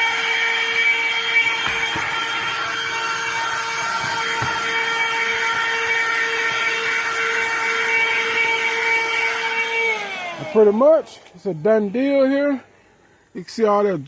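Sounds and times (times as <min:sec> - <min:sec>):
handheld vacuum cleaner running: 0:00.0 - 0:11.3.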